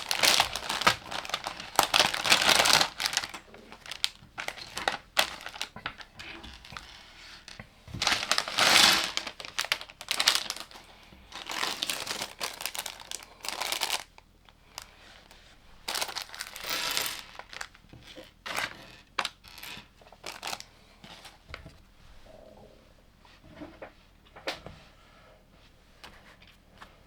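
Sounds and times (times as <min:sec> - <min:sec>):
plastic pieces rustling: 0:00.0 - 0:14.2, 0:15.9 - 0:21.3.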